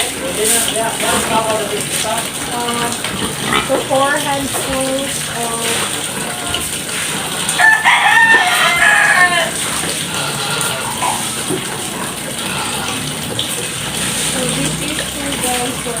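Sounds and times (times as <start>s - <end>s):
rooster crowing: 7.6s - 9.6s.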